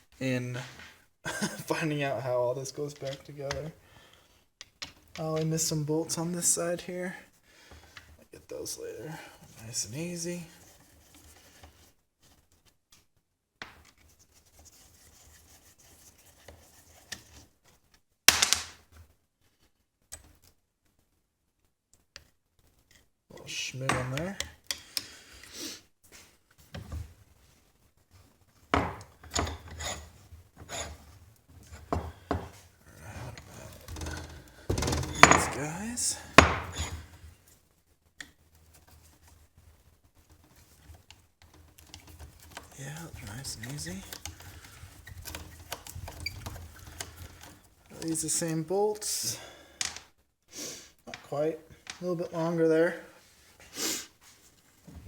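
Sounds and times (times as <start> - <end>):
metal scraping and rubbing: 28.8 - 37.3, 41.7 - 48.3
metal tools clattering: 33.2 - 37.2.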